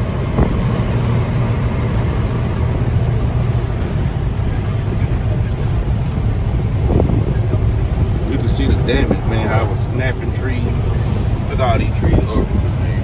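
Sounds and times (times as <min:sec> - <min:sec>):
road noise: 0:00.0 - 0:13.0
vehicle engine drone: 0:00.0 - 0:13.0.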